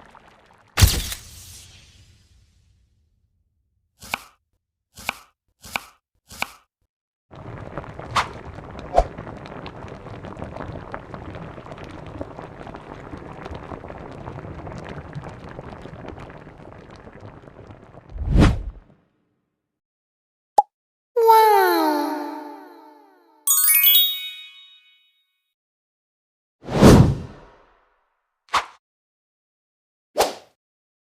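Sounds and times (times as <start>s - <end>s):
food frying in a pan: 7.4s - 18.1s.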